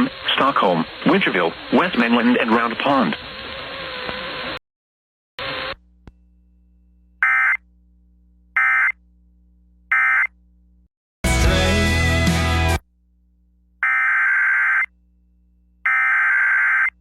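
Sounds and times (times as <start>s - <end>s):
radio static blip: 0.0s - 3.3s.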